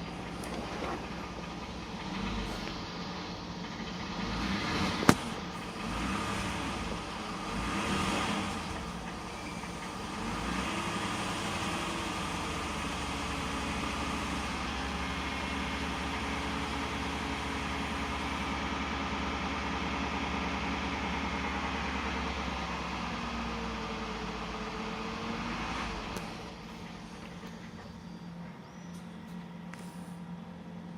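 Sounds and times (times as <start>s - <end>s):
car engine running with a knock: 3.6s - 10.6s.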